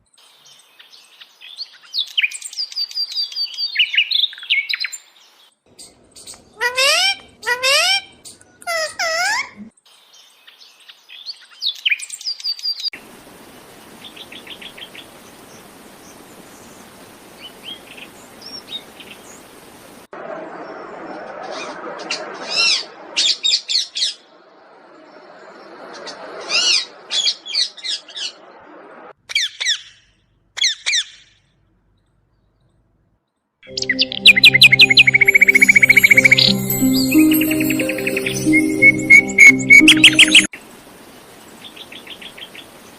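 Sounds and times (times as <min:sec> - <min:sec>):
background hiss: 0:13.0 - 0:20.1, 0:33.8 - 0:42.9.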